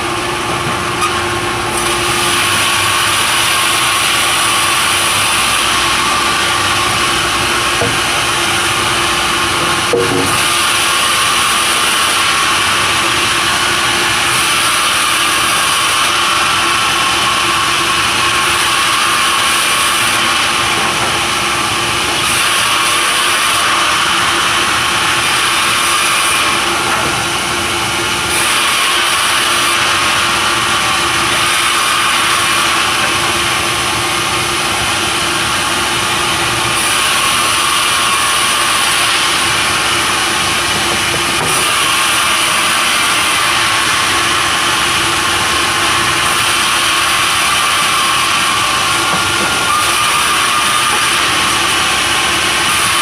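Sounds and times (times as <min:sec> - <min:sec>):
sawmill saw cutting timber: 0:00.0 - 0:53.0.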